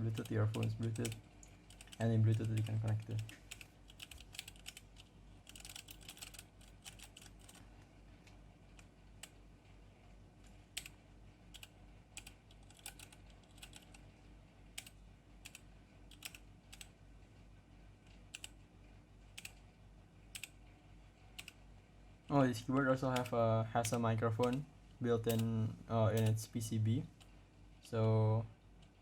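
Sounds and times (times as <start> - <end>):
mechanical keyboard keystrokes: 0.1 - 7.6, 11.5 - 14.0, 14.8 - 16.9, 25.3 - 25.5.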